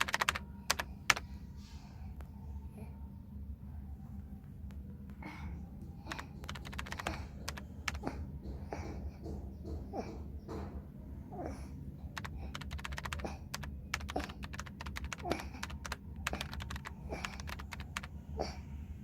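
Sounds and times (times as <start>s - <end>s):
keyboard typing clicks: 0.0s - 1.2s, 6.1s - 8.0s, 12.2s - 18.1s
steady low hum: 0.0s - 19.0s.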